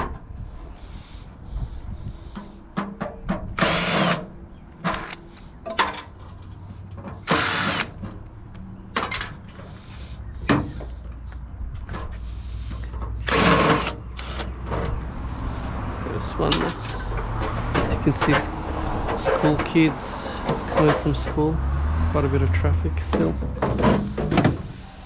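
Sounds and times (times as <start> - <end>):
power drill bursts: 3.6 - 5.2, 7.2 - 8.0, 13.2 - 14.5.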